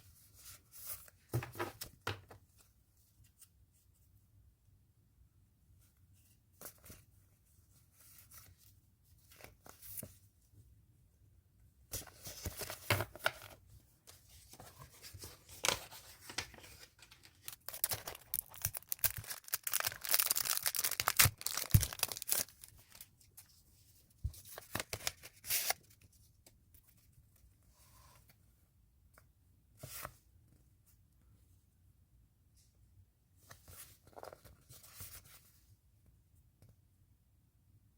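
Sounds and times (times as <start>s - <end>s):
packaging tearing and rustling: 16.3s - 23.0s.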